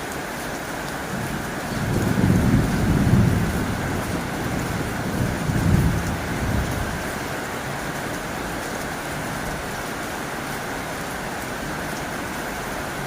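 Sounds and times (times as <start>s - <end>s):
heavy rain on a tin roof: 0.0s - 13.0s.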